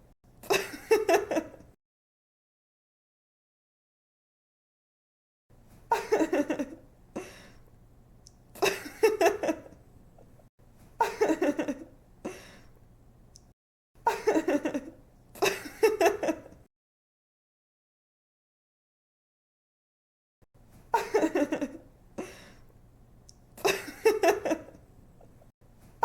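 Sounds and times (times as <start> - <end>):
young woman laughing: 0.4 - 1.7, 5.9 - 6.8, 8.6 - 9.8, 11.0 - 12.0, 14.0 - 16.6, 20.9 - 21.9, 23.6 - 24.8
quick breath: 22.2 - 22.7.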